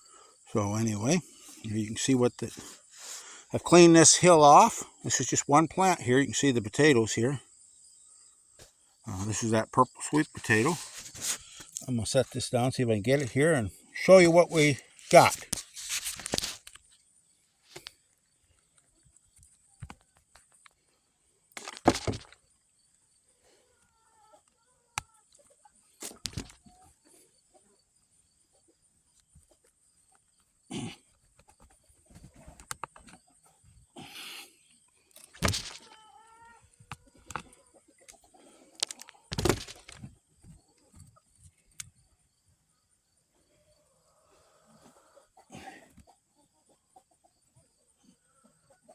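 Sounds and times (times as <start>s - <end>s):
hands and tool rustling soil: 9.1s - 17.0s, 21.6s - 22.4s, 25.9s - 26.8s, 35.1s - 40.6s.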